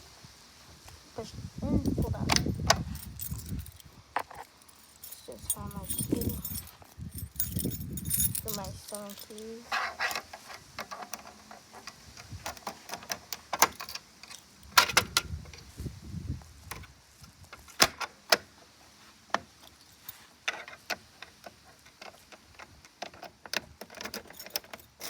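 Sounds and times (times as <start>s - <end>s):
keys jangling: 1.9s - 9.6s, 13.6s - 14.8s, 23.3s - 25.0s.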